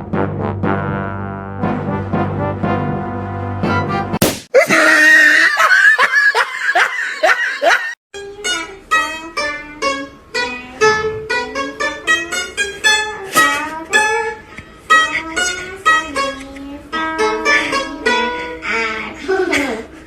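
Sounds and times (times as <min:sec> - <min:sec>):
plucked string melody: 0:08.2 - 0:19.0.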